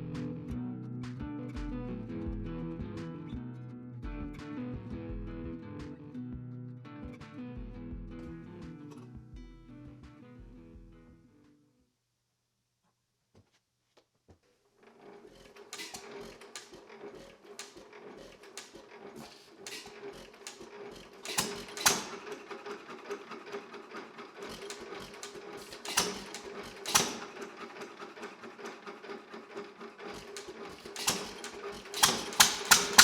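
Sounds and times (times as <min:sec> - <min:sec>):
hit-and-miss engine running: 0:15.6 - 0:33.0.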